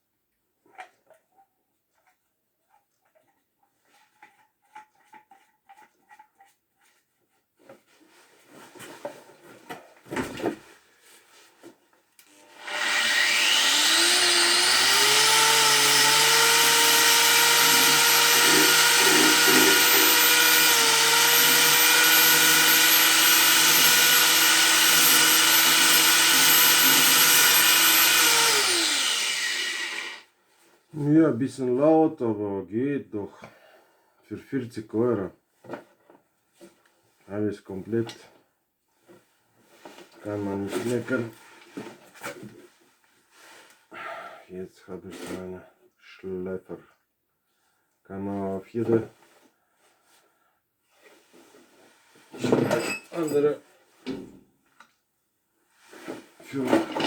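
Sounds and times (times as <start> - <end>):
angle grinder motor whining: 12.3 - 30.2.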